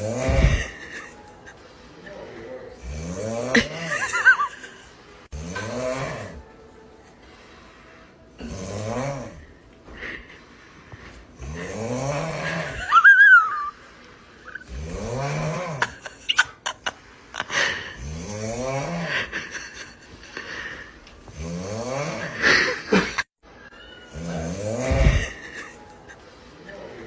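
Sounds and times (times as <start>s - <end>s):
person snoring loudly: 0.0s - 0.8s, 2.8s - 4.3s, 5.3s - 6.4s, 8.4s - 9.5s, 11.4s - 13.7s, 14.5s - 16.2s, 17.5s - 19.8s, 21.3s - 23.2s, 24.1s - 25.4s.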